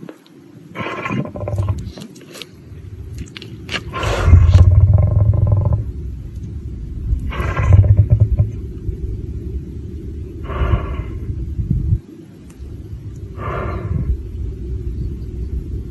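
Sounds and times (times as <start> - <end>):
lion roaring: 0.7 - 2.0, 2.7 - 11.5
steady low rumble: 0.8 - 15.9.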